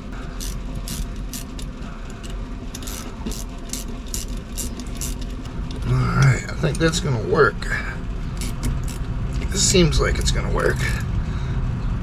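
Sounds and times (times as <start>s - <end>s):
wrench clicking: 0.4s - 5.9s, 8.4s - 9.5s.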